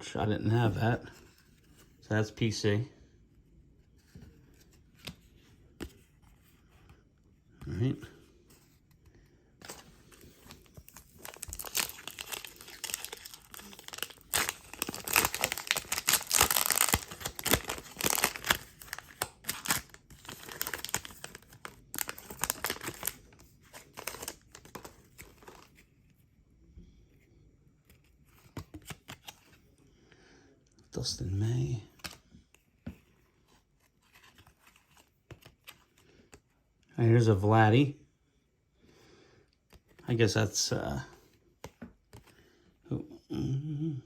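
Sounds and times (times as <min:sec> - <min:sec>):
foil wrapper tearing and crinkling: 0:11.0 - 0:25.6.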